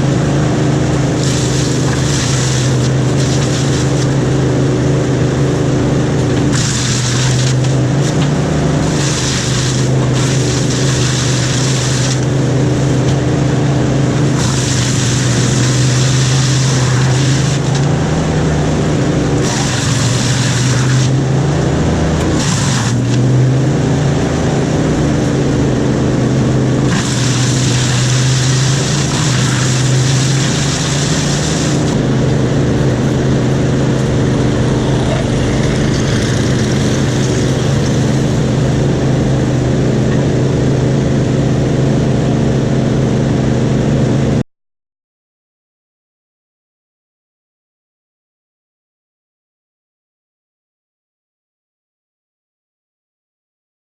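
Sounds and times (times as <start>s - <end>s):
engine running with low drone: 0.0s - 44.4s
hiss: 1.2s - 4.1s, 8.8s - 12.2s, 26.9s - 32.0s.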